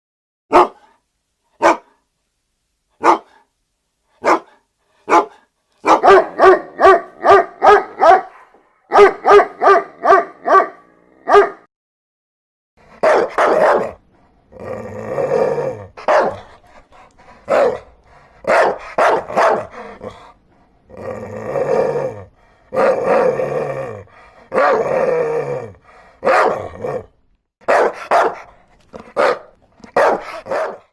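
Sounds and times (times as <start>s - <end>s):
dog barking: 0.5s - 1.0s, 1.6s - 2.0s, 3.0s - 3.5s, 4.2s - 11.7s, 12.9s - 14.0s, 16.0s - 16.6s, 17.4s - 20.2s, 24.5s - 24.9s, 26.2s - 27.0s, 27.6s - 30.9s.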